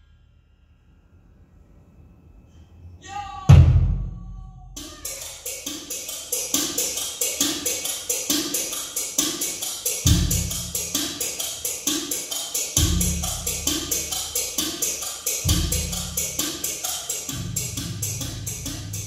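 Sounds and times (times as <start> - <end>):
heavy drum hit: 3.5 - 5.2, 10.1 - 11.1, 12.8 - 14.7, 15.4 - 16.7
music through speakers: 4.8 - 19.0
ticking percussion: 4.8 - 19.0.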